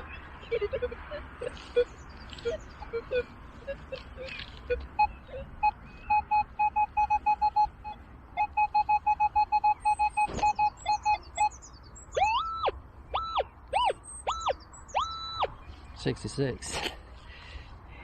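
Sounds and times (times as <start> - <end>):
metal detector short beeps: 0.0 - 11.6
metal detector gliding tones: 0.0 - 15.5.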